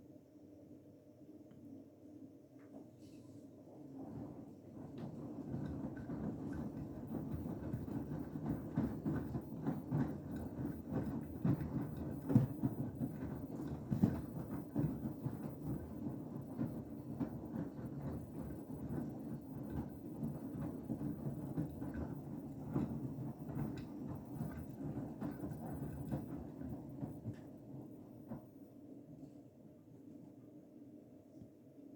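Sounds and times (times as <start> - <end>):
laundry tumbling and sloshing: 4.0 - 28.6
washing machine drum knocks and thuds: 4.2 - 28.6.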